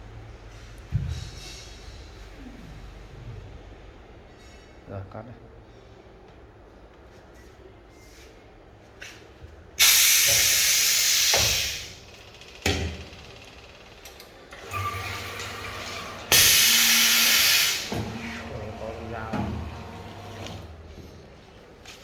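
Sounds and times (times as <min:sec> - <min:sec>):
cutting machine hiss: 0:09.8 - 0:12.0, 0:16.2 - 0:18.8.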